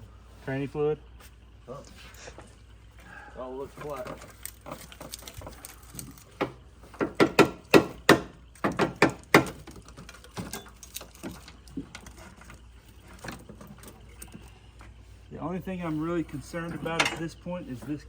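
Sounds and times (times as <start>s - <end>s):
loud knocks: 6.4s - 9.8s.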